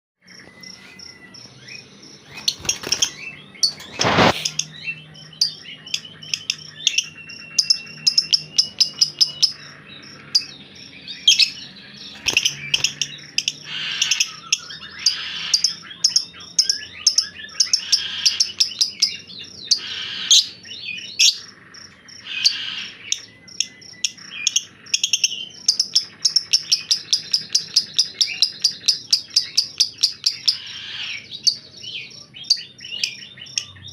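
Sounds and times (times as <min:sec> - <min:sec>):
bird chattering and clicking: 0:12.1 - 0:15.7.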